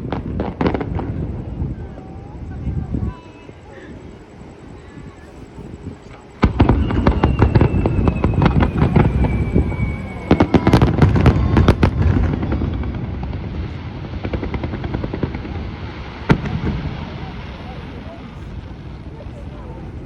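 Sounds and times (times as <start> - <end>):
fireworks bangs: 0.0 - 20.0
falling whistle: 6.4 - 13.1.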